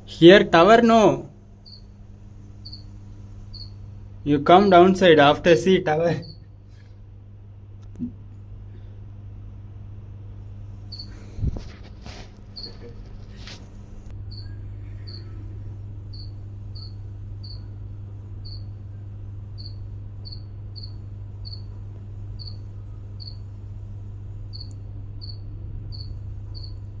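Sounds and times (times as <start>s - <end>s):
steady low hum: 0.0s - 27.0s
high-pitched chirps: 1.6s - 1.9s, 2.6s - 2.9s, 3.5s - 3.8s, 6.1s - 6.4s, 14.3s - 15.4s, 16.1s - 17.7s, 19.6s - 21.7s, 22.4s - 22.6s.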